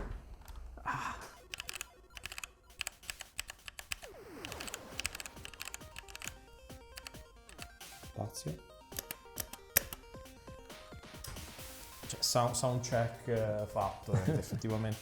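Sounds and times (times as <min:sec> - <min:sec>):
mechanical keyboard typing: 0:01.4 - 0:07.8, 0:08.9 - 0:10.1.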